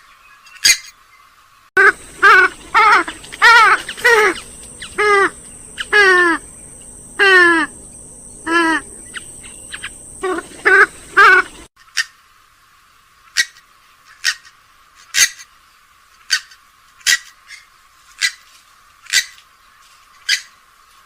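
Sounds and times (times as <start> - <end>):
waterbird calls sliding down: 1.8 - 6.5, 8.4 - 11.7.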